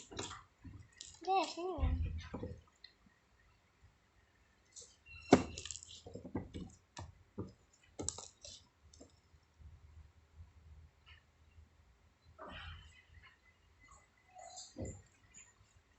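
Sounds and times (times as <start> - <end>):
small objects clicking: 0.0 - 1.6, 8.0 - 9.2.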